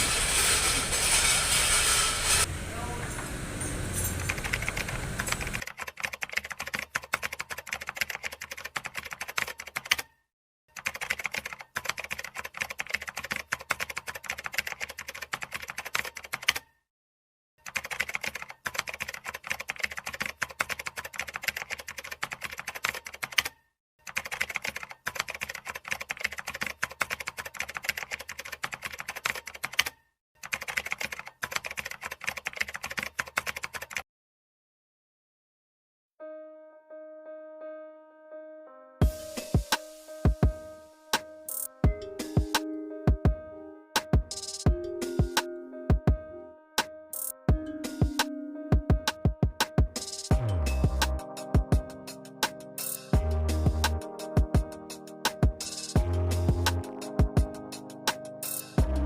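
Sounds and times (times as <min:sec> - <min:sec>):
rapid keyboard typing: 0:04.1 - 0:16.8, 0:17.6 - 0:34.0, 0:44.0 - 0:45.5, 0:47.2 - 0:59.0.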